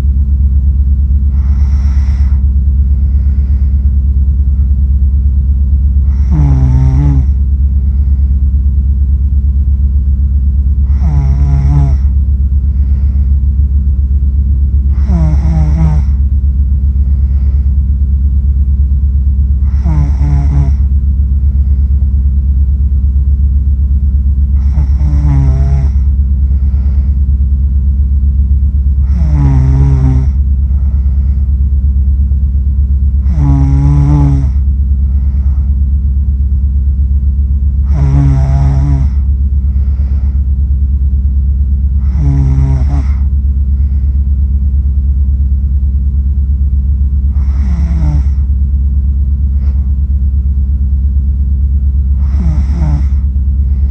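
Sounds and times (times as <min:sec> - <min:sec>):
loud steady low hum: 0:00.0 - 0:53.9
person snoring: 0:01.2 - 0:03.8, 0:06.0 - 0:08.3, 0:10.8 - 0:13.3, 0:14.9 - 0:16.2, 0:19.6 - 0:20.9, 0:24.5 - 0:27.2, 0:29.0 - 0:31.5, 0:33.2 - 0:35.8, 0:37.8 - 0:40.5, 0:42.0 - 0:44.2, 0:47.3 - 0:48.5, 0:49.5 - 0:49.9, 0:52.2 - 0:53.9.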